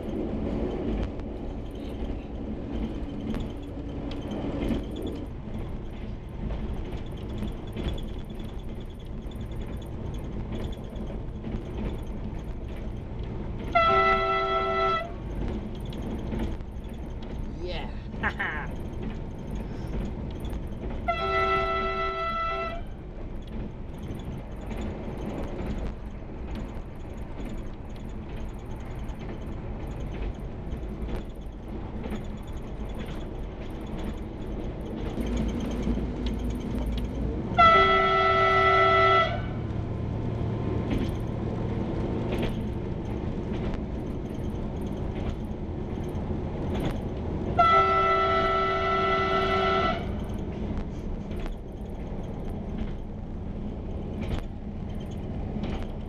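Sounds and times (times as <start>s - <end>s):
train running noise: 0.0s - 56.0s
train horn blasts: 13.7s - 15.2s, 21.0s - 23.0s, 37.5s - 39.7s, 47.5s - 50.2s.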